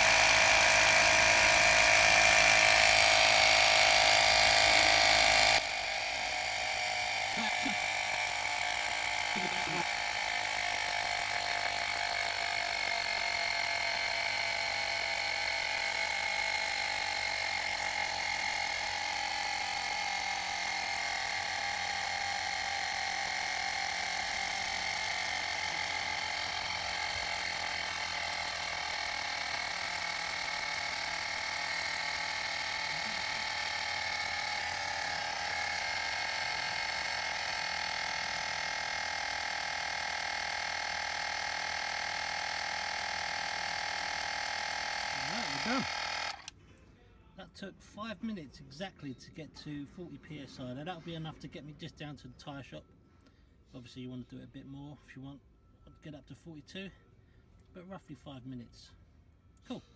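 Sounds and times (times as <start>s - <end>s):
portable tyre compressor running: 0.0s - 46.6s.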